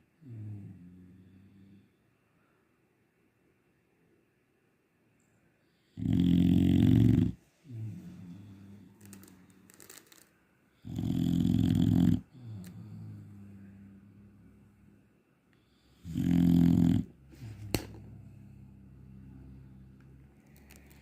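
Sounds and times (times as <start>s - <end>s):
dog snoring: 0.2s - 1.9s, 5.9s - 9.0s, 10.8s - 14.6s, 15.8s - 20.0s.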